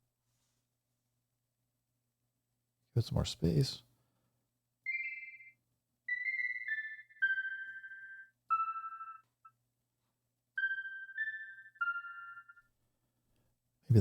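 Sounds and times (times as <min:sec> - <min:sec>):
high synthesizer notes: 0:06.1 - 0:09.2, 0:10.6 - 0:12.6.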